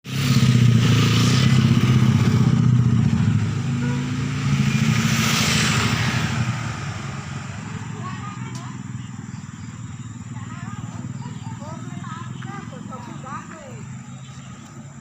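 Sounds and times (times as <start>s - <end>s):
vehicle engine running: 6.4s - 15.0s.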